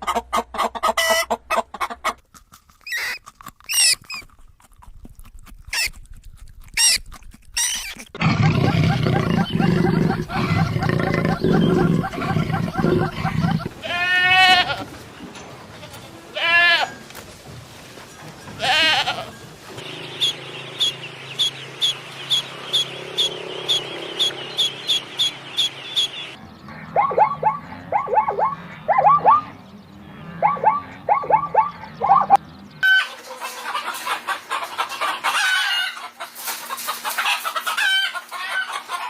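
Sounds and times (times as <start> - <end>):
goat bleating: 8.8 - 14.9, 15.8 - 17.0, 18.6 - 19.4
short high chirping calls: 19.9 - 29.5.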